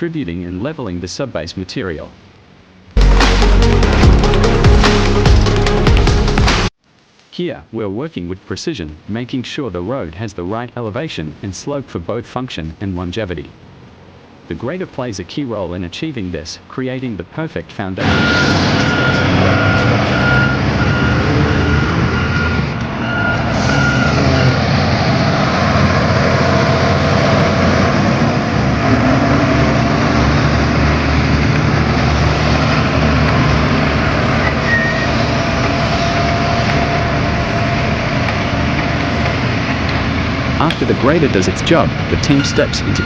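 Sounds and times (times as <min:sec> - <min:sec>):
reversing alarm beeping: 0:18.0 - 0:24.6, 0:33.9 - 0:38.2, 0:42.3 - 0:43.0
diesel engine running under load: 0:18.0 - 0:43.0.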